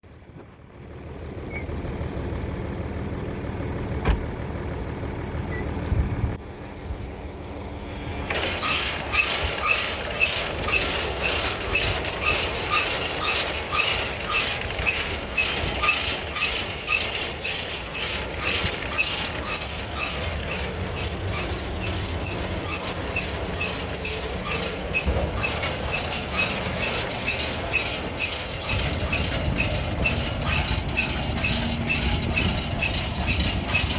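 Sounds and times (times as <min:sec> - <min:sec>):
tractor engine running: 0:00.1 - 0:33.9
baler rhythmic mechanical clatter: 0:07.6 - 0:33.9.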